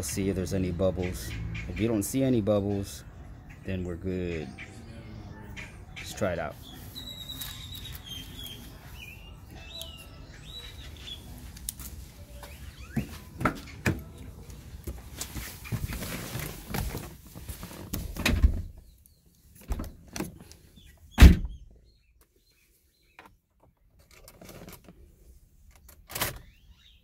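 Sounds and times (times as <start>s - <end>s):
car door shutting: 21.2s - 21.6s.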